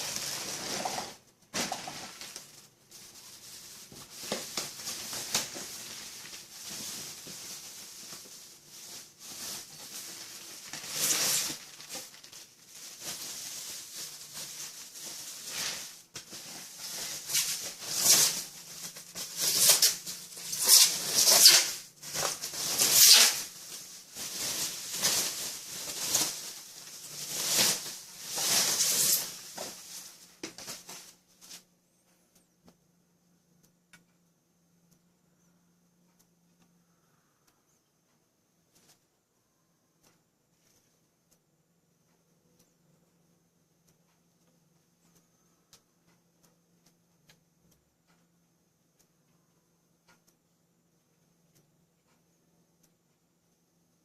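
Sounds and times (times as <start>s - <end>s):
packaging rustling and scraping: 0.0s - 31.7s.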